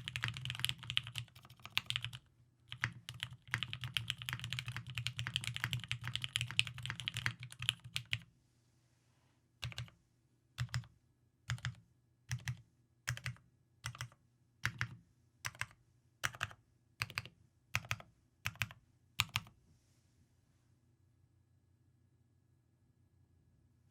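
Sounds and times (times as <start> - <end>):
mechanical keyboard typing: 0.0 - 8.2, 9.6 - 9.9, 10.6 - 10.9, 11.5 - 19.5.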